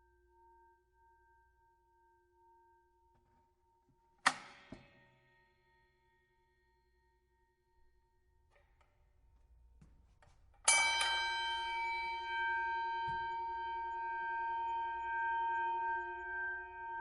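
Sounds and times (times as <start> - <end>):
boxing ring bell ringing: 10.7 - 17.0.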